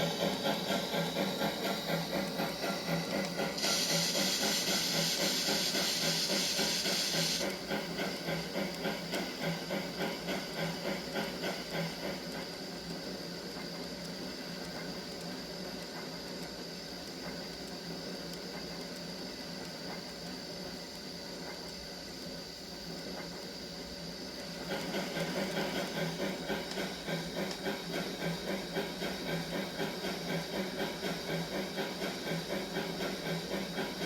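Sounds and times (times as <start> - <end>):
steam hissing: 0.0 - 12.7, 23.6 - 34.0
steam locomotive chuffing: 0.0 - 21.6, 22.8 - 34.0.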